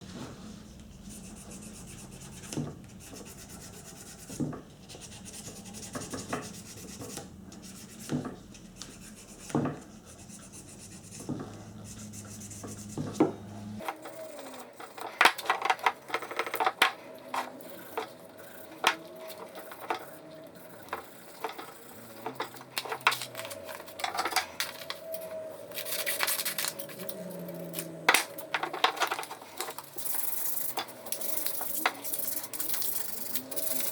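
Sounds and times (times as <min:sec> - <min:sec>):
rubbing and scraping metal: 0:13.8 - 0:33.9.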